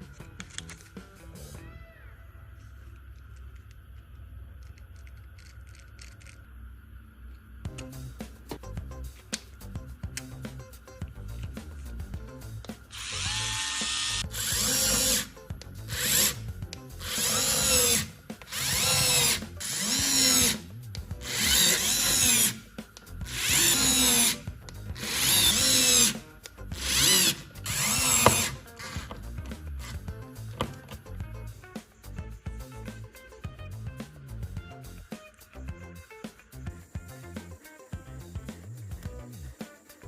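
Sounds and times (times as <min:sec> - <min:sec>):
power drill whirring: 0:12.9 - 0:16.4, 0:17.0 - 0:20.6, 0:21.2 - 0:30.0.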